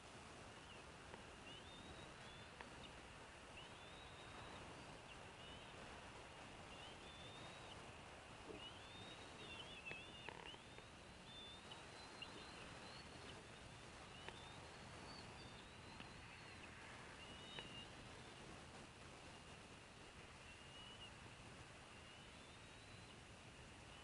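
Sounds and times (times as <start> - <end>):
steady background hiss: 0.0 - 24.0
high wavering bird calls: 0.6 - 18.6, 20.4 - 21.2
soft ticks: 1.1 - 1.3, 2.2 - 3.0, 9.4 - 13.6, 14.2 - 14.5, 15.9 - 16.7, 17.5 - 17.8.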